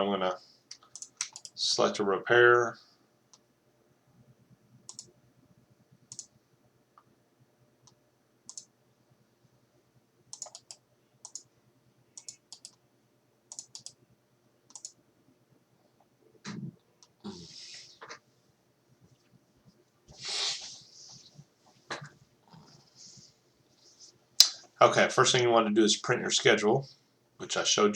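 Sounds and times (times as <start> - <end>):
mouse buttons clicking: 4.9 - 5.1.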